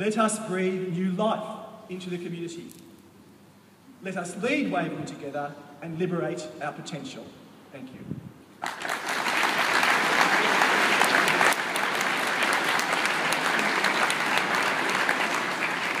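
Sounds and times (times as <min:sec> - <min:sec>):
audience applause: 0:08.6 - 0:16.0.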